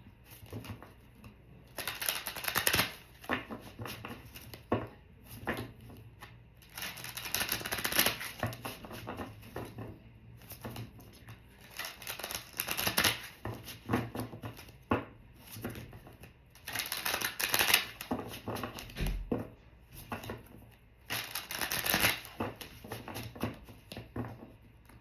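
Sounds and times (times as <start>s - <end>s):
cards snapping and slapping: 0.3s - 9.7s, 10.4s - 14.7s, 16.6s - 18.9s, 21.1s - 24.0s
cards riffling: 1.7s - 4.7s, 6.6s - 9.4s, 10.4s - 14.7s, 16.6s - 18.9s, 21.1s - 23.3s.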